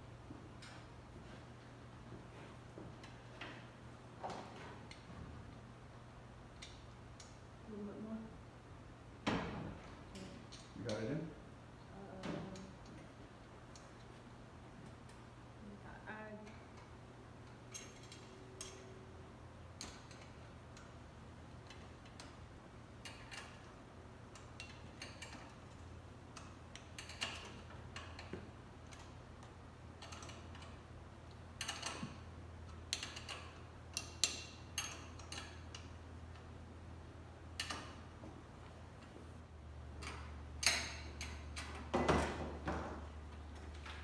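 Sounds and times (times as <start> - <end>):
steady low hum: 0.0 - 44.0
metallic clicks of hand tools: 32.9 - 35.9.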